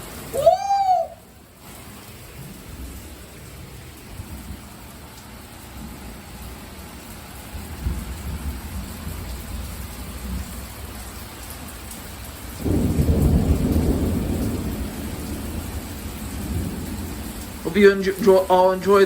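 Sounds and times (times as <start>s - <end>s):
thunder rumbling: 0.0s - 19.0s
loud thunder clap: 12.6s - 17.7s.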